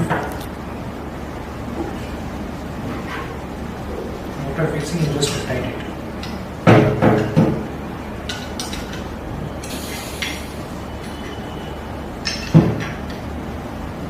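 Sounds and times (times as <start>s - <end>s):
brief scraping hiss: 9.6s - 10.6s.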